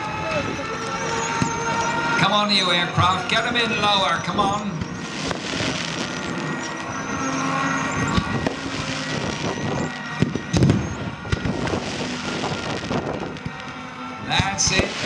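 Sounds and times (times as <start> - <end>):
pyrotechnic bangs: 3.0 - 15.0.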